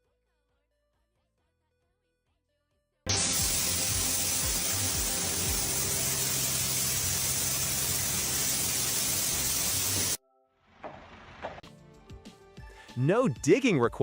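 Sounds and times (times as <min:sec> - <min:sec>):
loud rushing hiss: 0:03.1 - 0:10.2.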